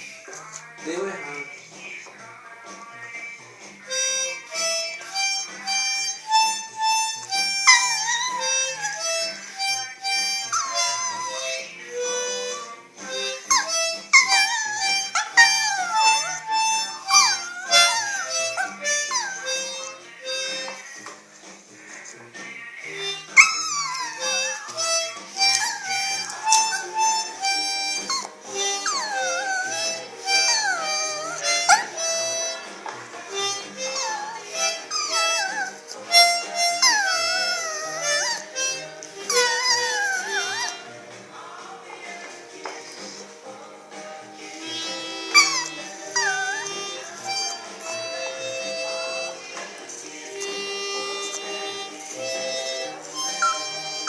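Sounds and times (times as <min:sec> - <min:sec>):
harmonica playing: 0:02.9 - 0:54.0
dog howling: 0:10.4 - 0:11.4, 0:13.5 - 0:20.0, 0:23.3 - 0:27.4, 0:28.0 - 0:32.0, 0:33.8 - 0:40.8, 0:45.0 - 0:49.3.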